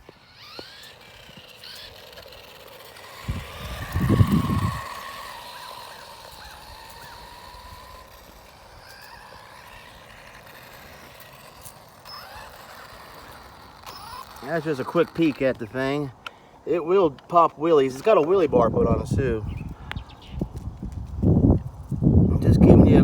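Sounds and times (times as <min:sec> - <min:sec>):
electric motor whining: 0:00.0 - 0:17.3.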